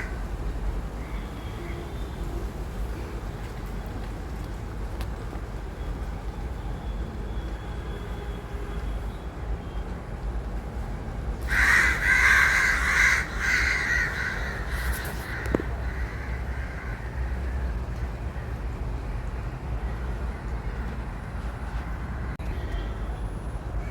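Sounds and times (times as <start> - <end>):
crows cawing: 0.0 - 0.2, 11.4 - 17.7.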